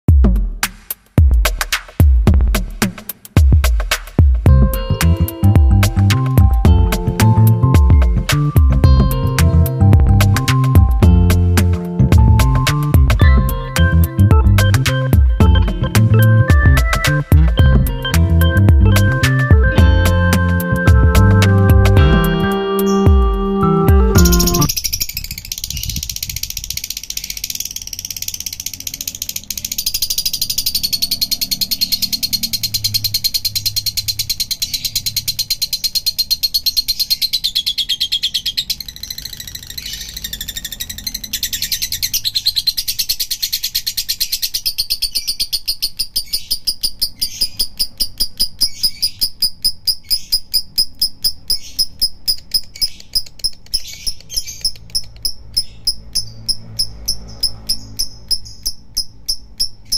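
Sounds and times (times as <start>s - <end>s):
lovebird chattering song: 24.1s - 59.9s.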